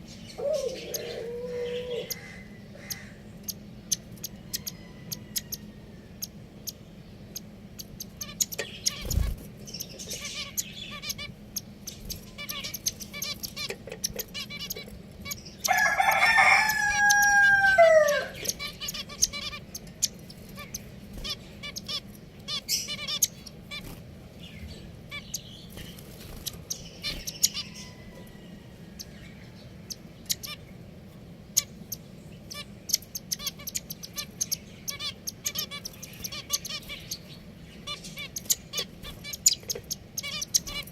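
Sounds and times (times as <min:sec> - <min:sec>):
finches chirping softly: 0:00.0 - 0:40.9
rooster crowing: 0:04.3 - 0:06.2, 0:15.6 - 0:18.6, 0:27.6 - 0:29.6.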